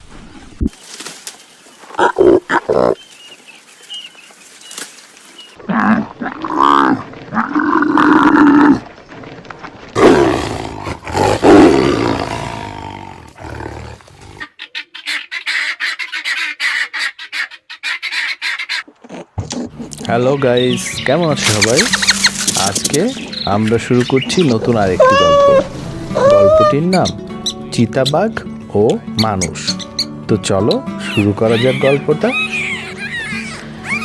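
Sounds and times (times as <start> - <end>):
chatter of overlapping animal calls: 14.4 - 18.8, 20.1 - 28.3, 29.0 - 34.0
long loud animal calls: 24.8 - 26.8, 31.0 - 34.0
short animal cries: 25.0 - 26.8.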